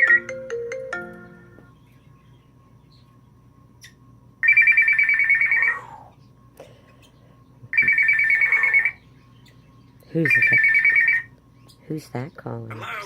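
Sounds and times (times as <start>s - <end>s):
parrot mimicking ringtone: 0.0s - 1.5s, 4.4s - 6.0s, 7.7s - 9.0s, 10.2s - 11.3s.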